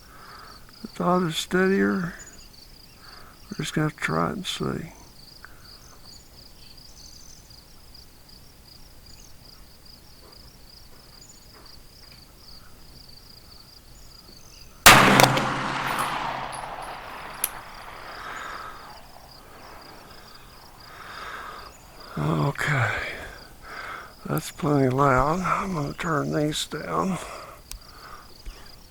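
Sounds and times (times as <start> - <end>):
pistol shot with rolling echo: 14.9 - 21.0
crickets chirping: 16.8 - 28.9.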